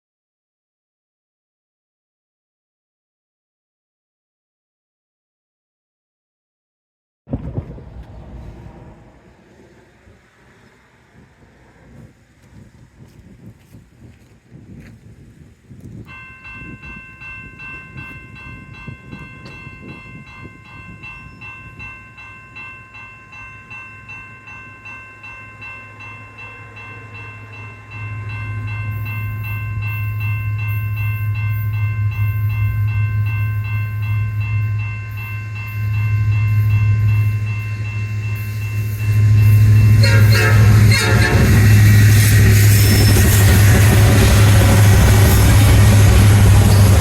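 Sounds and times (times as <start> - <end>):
diesel engines rumbling: 7.3 - 14.1, 25.2 - 47.0
locomotive air horn chord: 35.9 - 47.0.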